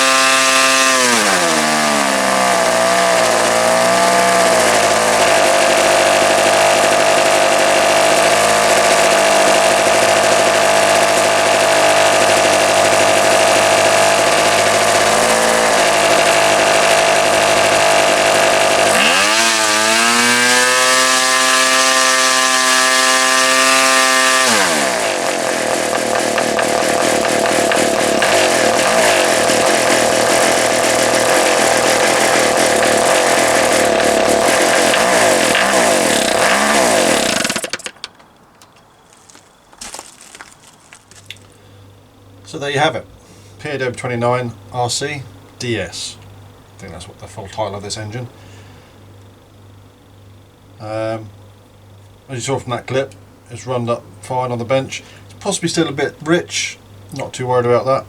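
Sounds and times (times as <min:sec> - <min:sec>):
model diesel engine running: 0:00.0 - 0:38.0.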